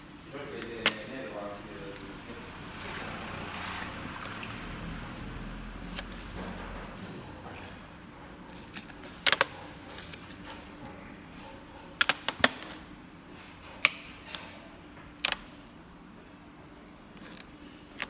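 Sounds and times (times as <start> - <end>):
vinyl decal crackling: 0.5 - 6.3.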